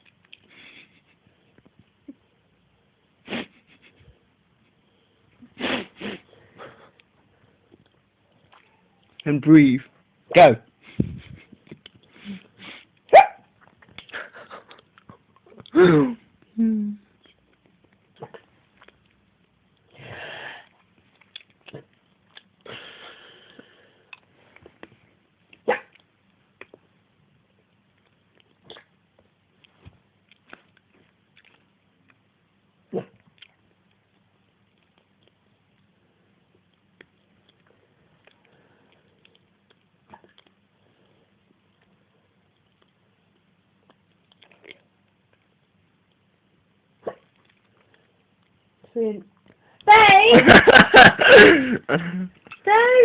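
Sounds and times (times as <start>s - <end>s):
breathy breaths: 19.9s - 20.8s, 22.6s - 24.2s.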